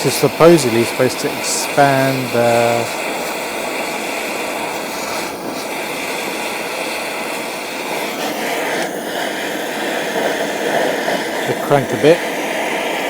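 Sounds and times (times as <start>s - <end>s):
blowtorch flame hissing: 0.0s - 13.0s.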